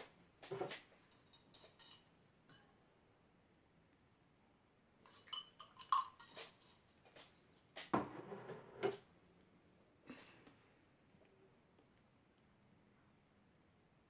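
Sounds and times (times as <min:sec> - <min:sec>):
utensil clinking on container: 0:00.6 - 0:02.7, 0:05.0 - 0:07.3.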